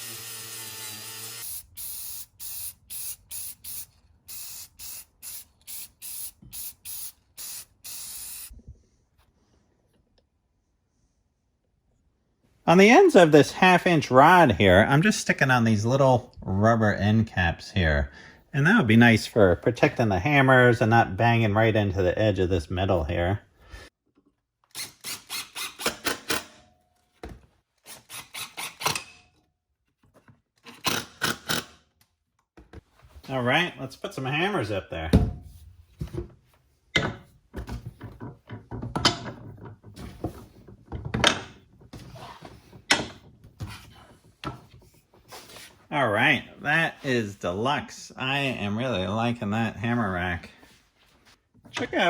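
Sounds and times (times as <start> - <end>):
spray hissing from a nozzle: 1.8 - 8.5.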